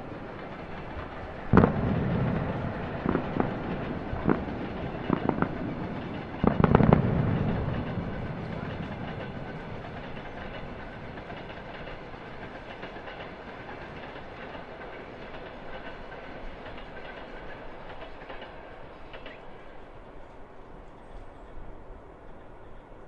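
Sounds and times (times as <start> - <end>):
fireworks crackling and rumbling: 0.0 - 15.9
small firework pops: 1.0 - 12.0.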